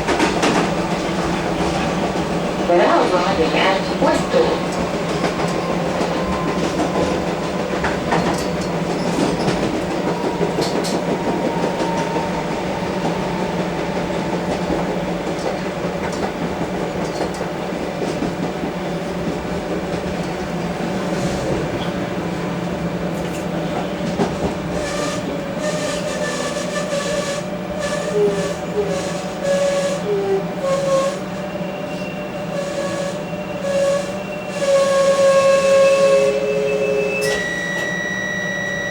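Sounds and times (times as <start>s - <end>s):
train clicks and changing tones: 0.0s - 38.9s.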